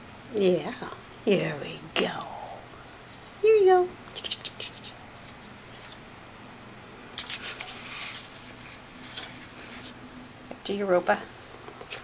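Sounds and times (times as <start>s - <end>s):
soft rustling: 4.6s - 6.6s.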